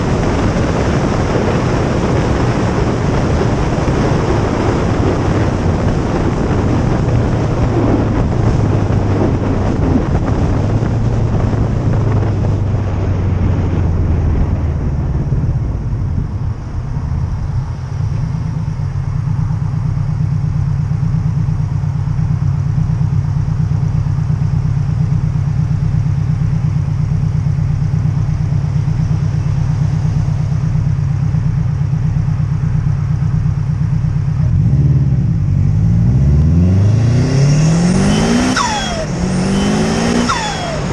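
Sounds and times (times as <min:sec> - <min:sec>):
car engine running: 0:00.0 - 0:40.9.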